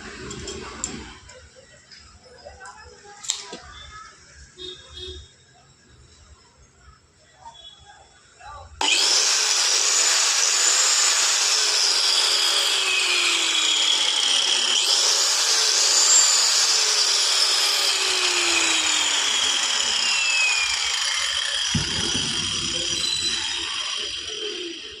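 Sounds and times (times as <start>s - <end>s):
angle grinder cutting: 8.8s - 25.0s
low thump: 21.7s - 23.5s.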